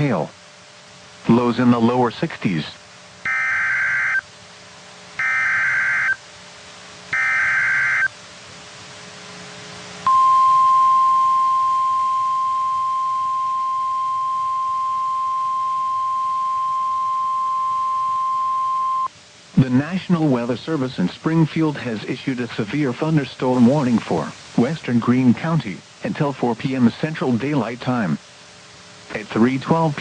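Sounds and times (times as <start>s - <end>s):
digital data bursts: 3.2s - 4.2s, 5.2s - 6.2s, 7.1s - 8.1s
steady alarm tone: 3.2s - 4.3s, 5.2s - 6.2s, 7.1s - 8.1s, 10.1s - 19.1s.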